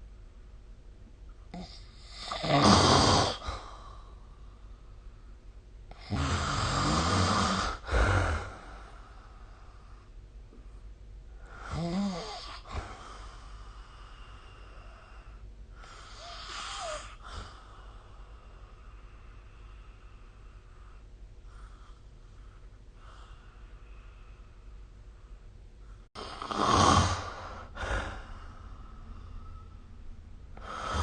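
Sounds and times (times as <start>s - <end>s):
person snoring: 1.5s - 3.6s, 5.9s - 9.0s, 11.5s - 13.2s, 26.2s - 28.5s, 30.6s - 31.0s.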